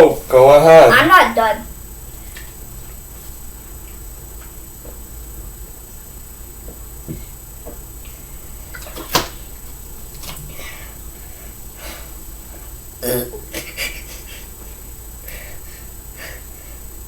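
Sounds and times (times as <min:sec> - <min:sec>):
person burping: 0:13.0 - 0:13.6.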